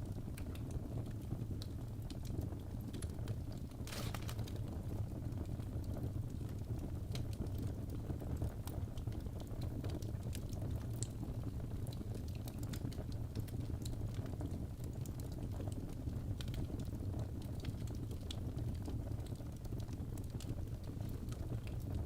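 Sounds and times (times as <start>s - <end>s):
logs crackling and popping: 0.1s - 22.0s
fire rumbling: 0.4s - 14.2s.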